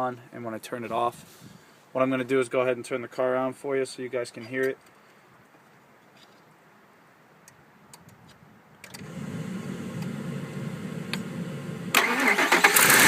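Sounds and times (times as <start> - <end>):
truck engine starting: 8.9 - 13.0
low electrical hum: 9.0 - 12.0.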